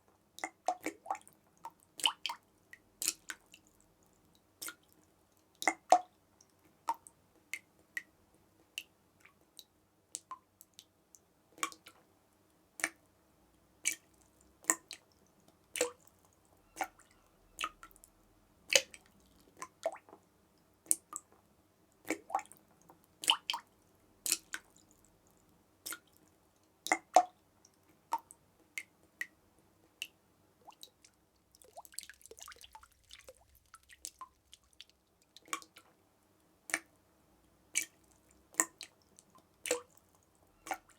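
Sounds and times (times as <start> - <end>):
water drops dripping: 5.6 - 8.1, 12.8 - 13.0, 13.8 - 18.1, 18.7 - 20.2, 23.2 - 35.9, 37.8 - 40.9.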